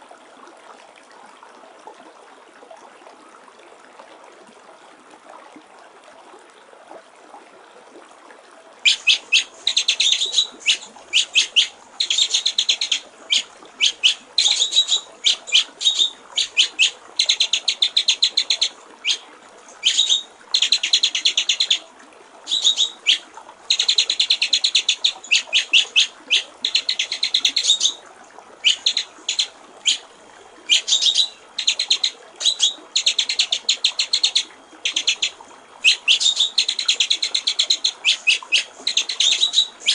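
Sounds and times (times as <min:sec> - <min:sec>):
trickle of running water: 0:00.0 - 0:39.9
songbird singing rattling phrases: 0:08.8 - 0:21.8, 0:22.5 - 0:28.0, 0:28.6 - 0:30.0, 0:30.7 - 0:39.9.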